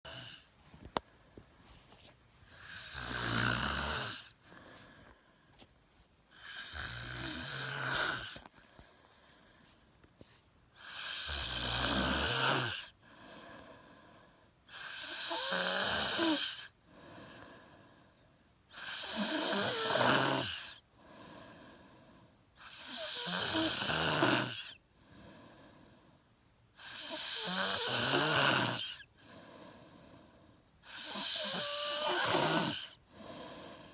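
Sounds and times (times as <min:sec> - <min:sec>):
loud low snores: 0:00.1 - 0:00.5, 0:02.6 - 0:04.4, 0:06.3 - 0:08.5, 0:10.8 - 0:13.0, 0:14.7 - 0:17.4, 0:18.7 - 0:20.8, 0:22.6 - 0:25.6, 0:26.8 - 0:33.9
quiet breaths: 0:00.1 - 0:33.9.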